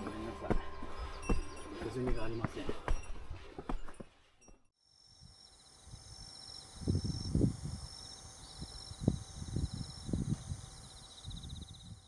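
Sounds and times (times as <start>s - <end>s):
insects singing: 4.8s - 12.0s.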